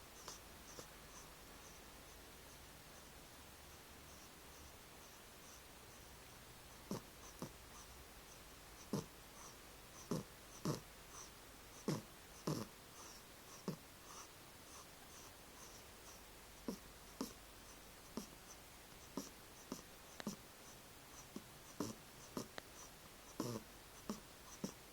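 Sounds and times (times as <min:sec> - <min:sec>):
cat snoring: 0:06.8 - 0:07.9, 0:08.8 - 0:14.9, 0:15.6 - 0:17.4, 0:18.1 - 0:24.8.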